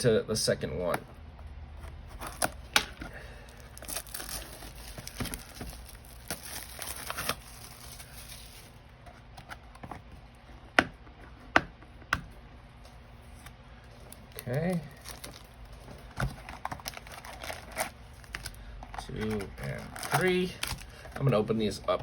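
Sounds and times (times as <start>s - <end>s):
plastic wrap tearing and crinkling: 2.2s - 8.8s, 14.1s - 21.4s.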